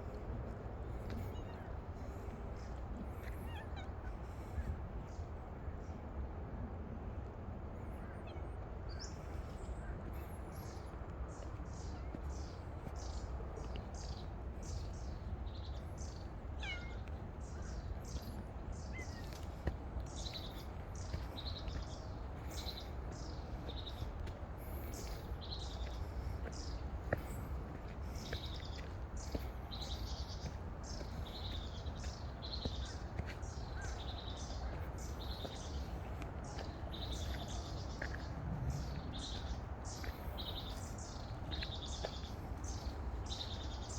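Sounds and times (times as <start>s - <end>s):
birds chirping: 8.9s - 43.9s
steady low rumble: 17.6s - 43.9s.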